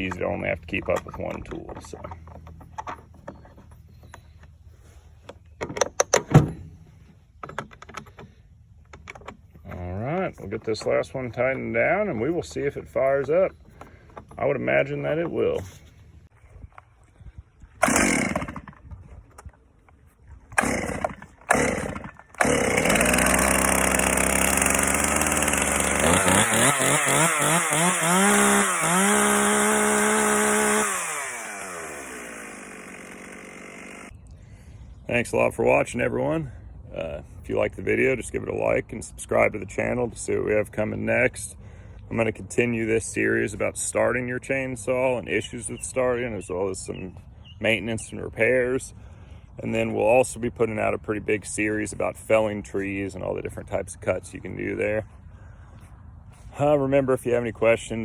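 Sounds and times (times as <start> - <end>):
chainsaw engine revving: 17.8 - 18.7, 20.6 - 34.1
chainsaw starter cord pulls: 17.8 - 19.5, 20.5 - 34.1.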